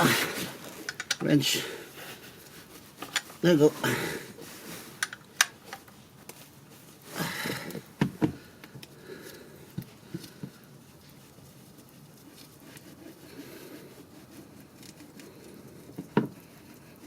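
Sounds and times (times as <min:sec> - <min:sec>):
scraping rustle: 0:10.0 - 0:17.0.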